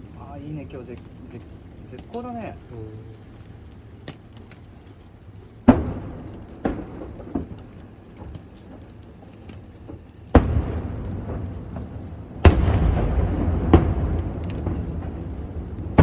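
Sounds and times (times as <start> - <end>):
firework shells booming: 5.6 - 16.0
rumbling tail: 10.3 - 16.0.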